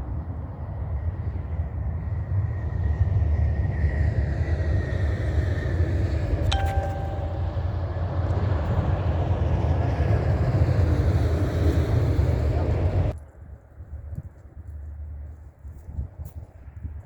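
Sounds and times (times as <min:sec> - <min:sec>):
sharp metallic clink: 0:06.5 - 0:07.7
wind rumble on microphone: 0:08.6 - 0:17.0.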